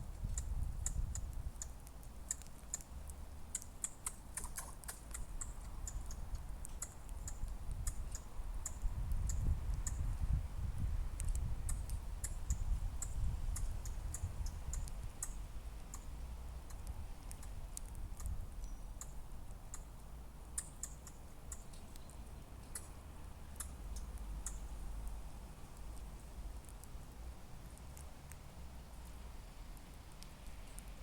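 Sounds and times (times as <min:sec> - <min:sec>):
squirrel clicking calls: 0:00.2 - 0:10.1, 0:11.2 - 0:26.0.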